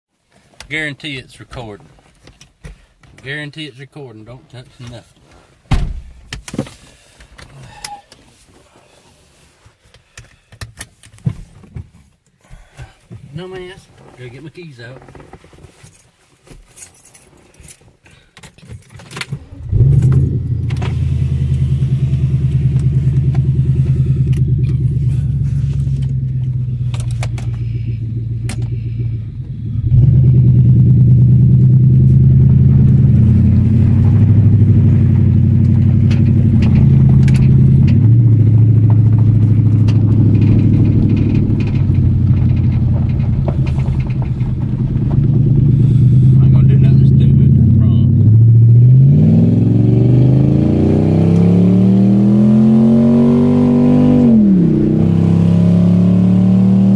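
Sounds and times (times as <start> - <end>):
keys jangling: 16.7 - 17.8
loud unmuffled car engine: 19.4 - 56.9.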